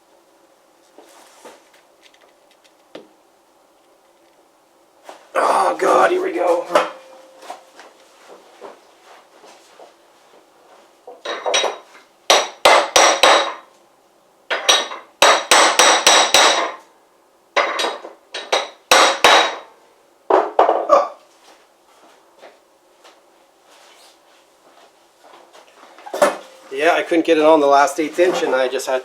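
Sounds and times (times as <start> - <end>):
metal strikes against a vise: 11.3 - 13.6, 14.5 - 16.8, 17.6 - 19.7.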